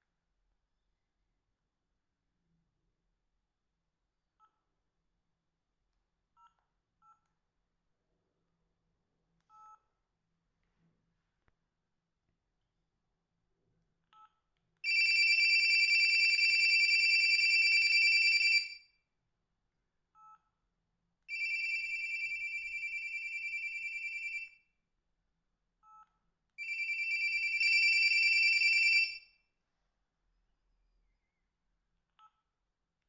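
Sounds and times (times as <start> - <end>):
trilling two-tone phone ringtone: 14.9 - 18.8, 21.3 - 24.6, 26.6 - 29.3.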